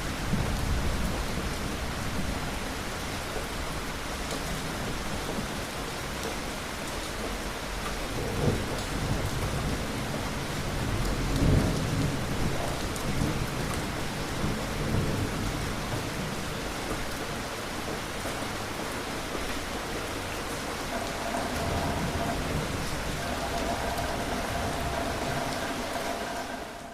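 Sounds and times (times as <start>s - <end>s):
steady rain falling: 0.0s - 26.9s
distant thunder rumbling: 20.9s - 26.9s.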